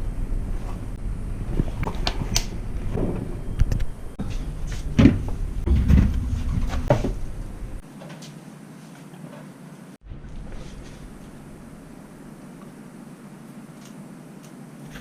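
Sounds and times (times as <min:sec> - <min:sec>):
steady low rumble: 0:00.0 - 0:07.8, 0:10.0 - 0:13.7
irregular knocks and clatters: 0:02.8 - 0:07.8.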